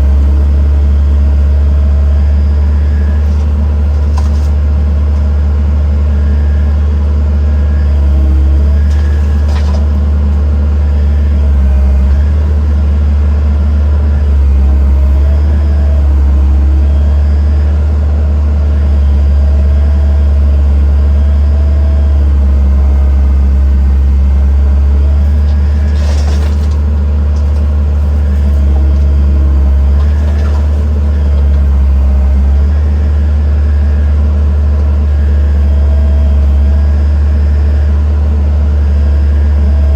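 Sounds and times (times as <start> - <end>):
heavy machinery diesel engine running: 0.0 - 39.9.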